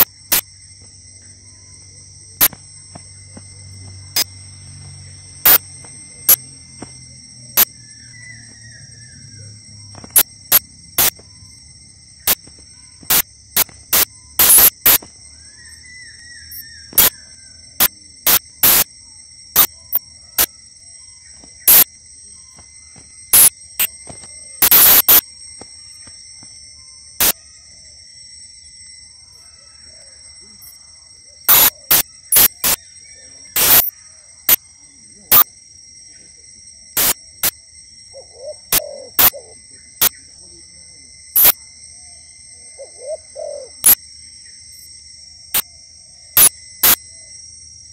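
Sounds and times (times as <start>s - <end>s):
high-pitched insect drone: 0.0s - 47.9s
loud sharp clicks: 13.1s - 15.0s, 46.4s - 47.0s.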